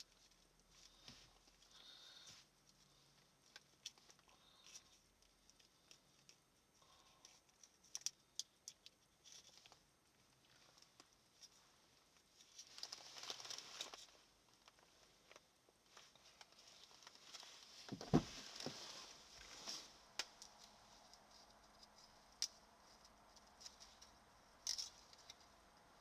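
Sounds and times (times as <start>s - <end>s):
faint rustling: 9.1s - 26.0s.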